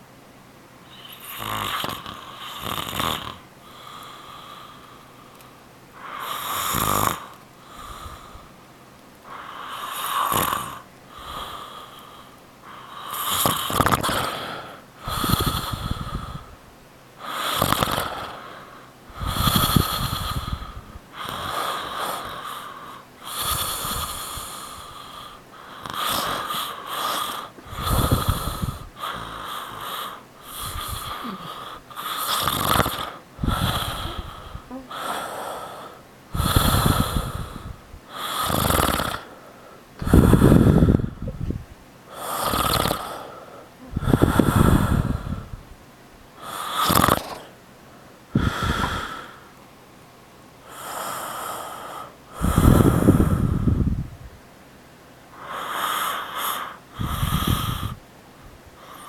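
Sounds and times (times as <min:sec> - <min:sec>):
man snoring: 0:00.9 - 0:04.8, 0:06.0 - 0:08.4, 0:09.3 - 0:12.1, 0:12.7 - 0:16.5, 0:17.2 - 0:39.4, 0:40.0 - 0:41.4, 0:42.1 - 0:45.5, 0:46.4 - 0:47.6, 0:48.3 - 0:49.4, 0:50.7 - 0:53.8, 0:55.4 - 0:58.0.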